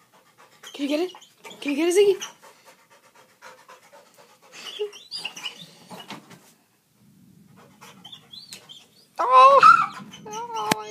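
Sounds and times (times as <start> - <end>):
dog panting: 0.0 - 6.4, 7.4 - 9.2.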